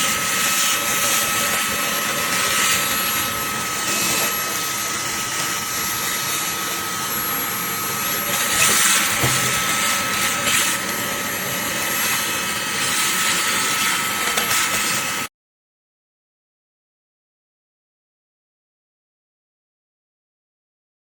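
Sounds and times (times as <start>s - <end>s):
handheld vacuum running: 0.0s - 15.3s.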